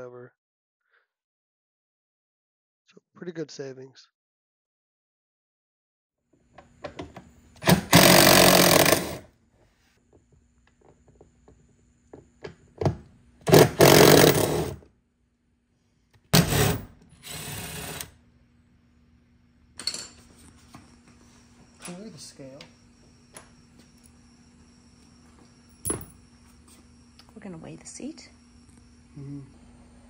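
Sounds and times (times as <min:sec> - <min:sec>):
power tool running: 0:07.6 - 0:09.3, 0:13.4 - 0:14.8, 0:16.4 - 0:18.2.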